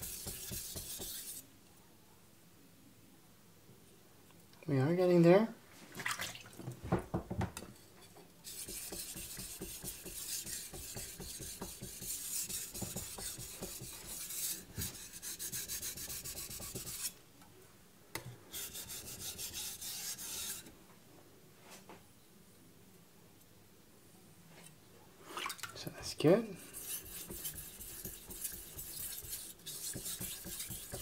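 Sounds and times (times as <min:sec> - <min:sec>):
knife sharpening on whetstone: 0:26.8 - 0:31.0.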